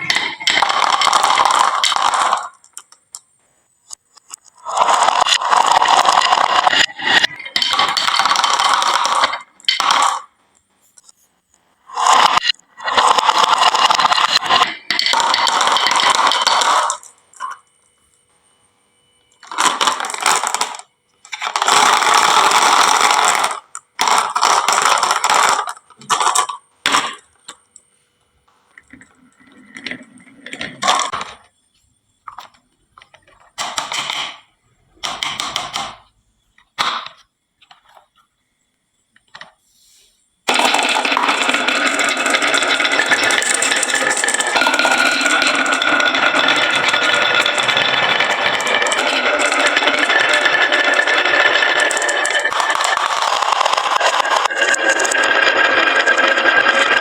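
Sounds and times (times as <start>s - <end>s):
marbles rattling down wooden run: 0.0s - 2.9s, 4.6s - 10.3s, 11.9s - 17.6s, 19.4s - 27.3s, 28.8s - 31.4s, 40.5s - 57.0s
marbles clattering into toy trucks: 0.0s - 3.2s, 3.9s - 10.4s, 11.9s - 17.8s, 19.4s - 27.9s, 28.7s - 31.6s, 32.3s - 38.2s, 40.5s - 57.0s.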